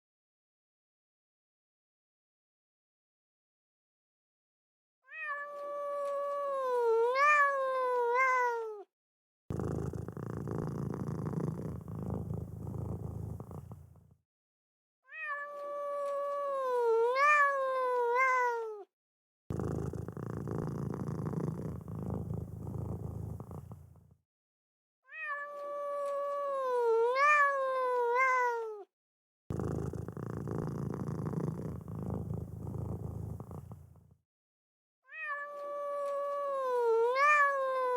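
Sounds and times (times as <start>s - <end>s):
cat meowing: 5.1s - 8.9s, 15.1s - 18.9s, 25.1s - 28.9s, 35.1s - 37.9s.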